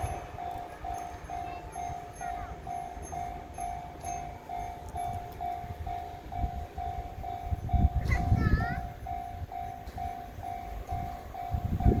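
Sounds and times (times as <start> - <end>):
level crossing alarm dinging: 0.0 - 12.0
wind rumble on microphone: 4.8 - 12.0.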